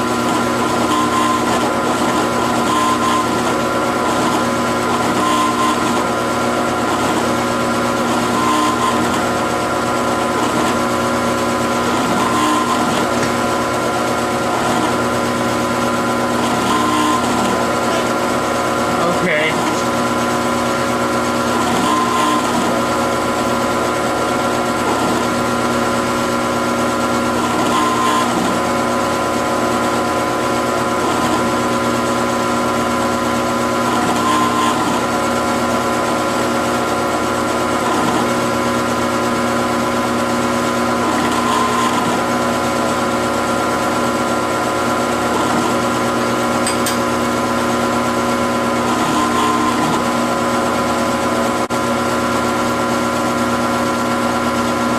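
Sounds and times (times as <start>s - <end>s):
mill-drill machine humming: 0.0s - 54.9s.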